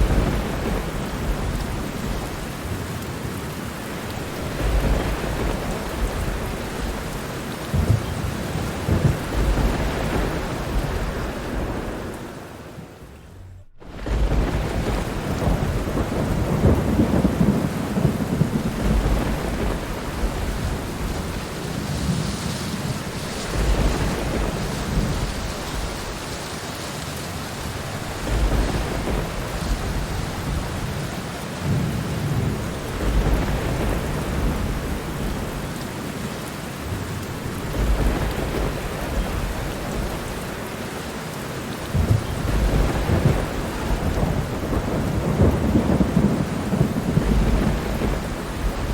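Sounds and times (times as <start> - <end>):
thunder rumbling: 0.0 - 26.8, 27.4 - 48.9
heavy rain hissing: 0.0 - 48.9.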